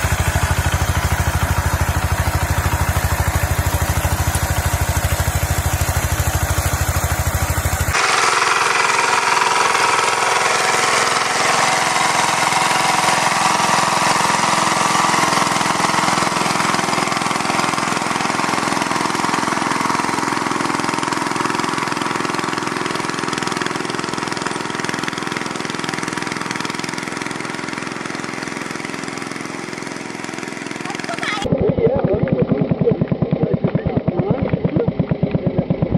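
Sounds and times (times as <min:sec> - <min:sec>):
small tractor engines running: 0:00.0 - 0:35.9.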